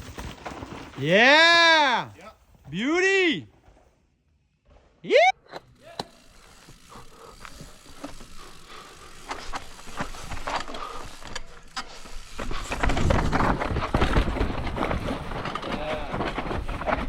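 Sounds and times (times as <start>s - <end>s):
bike chain and tyre clicks: 5.5s - 17.0s
low rumble of tyres: 6.1s - 17.0s.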